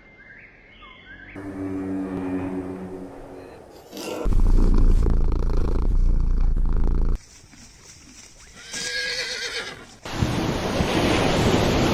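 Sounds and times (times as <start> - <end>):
horse whinnying: 8.6 - 9.9
wind or surf rush: 10.0 - 11.9.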